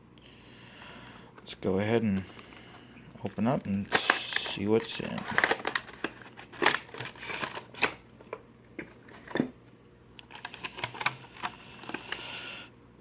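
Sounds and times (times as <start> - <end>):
box and packaging rustling: 2.0 - 9.6, 10.2 - 12.2.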